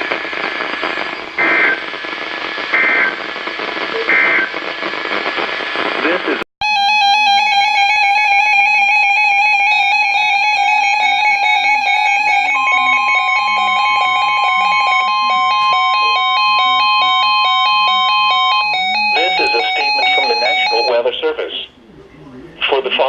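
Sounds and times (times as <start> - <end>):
higher steady electronic tone: 6.6 - 21.1
loud pulsing electronic alert tone: 6.6 - 21.1.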